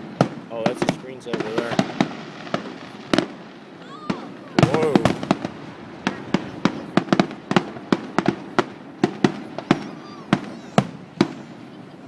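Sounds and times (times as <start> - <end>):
fireworks banging: 0.0 - 12.0
faint firework whistle: 9.2 - 11.8.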